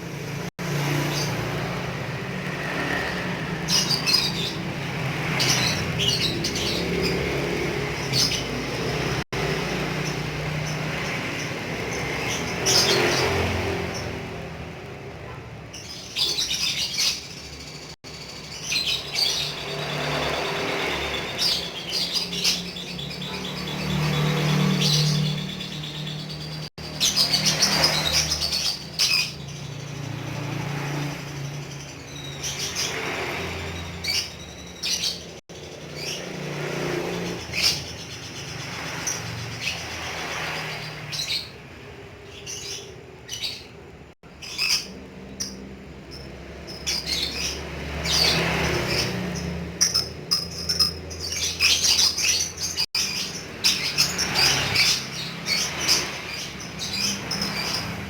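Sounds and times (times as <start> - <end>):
lovebird chattering: 42.3 - 58.0.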